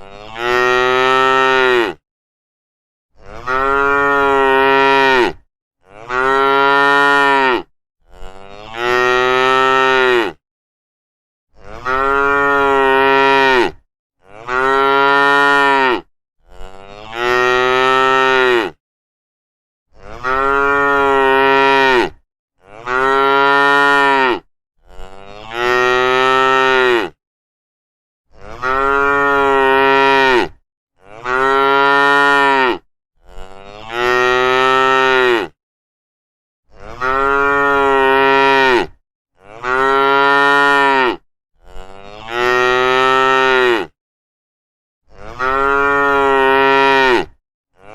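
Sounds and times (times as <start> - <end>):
cows mooing: 3.2 - 10.4, 11.6 - 18.8, 20.1 - 27.2, 28.4 - 35.6, 36.8 - 43.9, 45.2 - 47.3.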